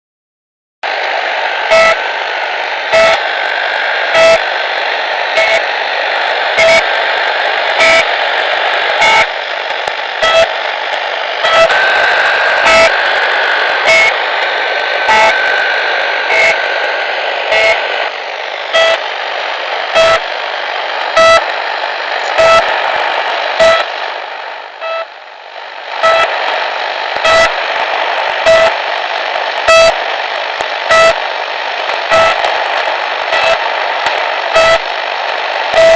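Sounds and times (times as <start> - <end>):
static hiss: 0.8 - 35.9
short radio beeps: 1.6 - 19.2, 19.8 - 24.1, 24.8 - 25.2, 25.9 - 35.0, 35.7 - 35.9.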